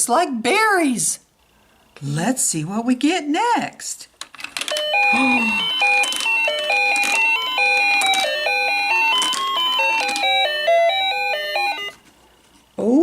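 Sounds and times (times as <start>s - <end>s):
toy electronic jingle: 4.8s - 12.0s.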